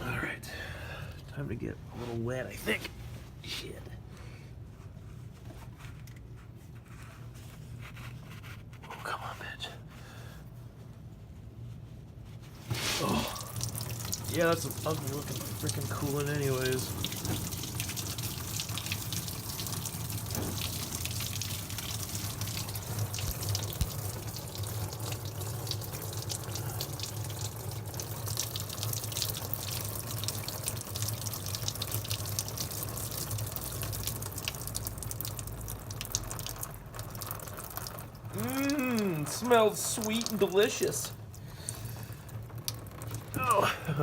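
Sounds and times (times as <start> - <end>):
coolant draining and splattering: 12.5 - 44.0.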